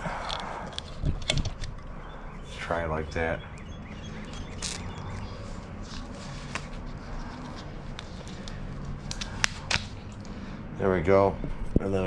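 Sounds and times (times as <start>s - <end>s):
steady low hum: 0.0s - 12.0s
wire stripper clicking and scraping: 0.1s - 1.9s, 3.5s - 5.3s.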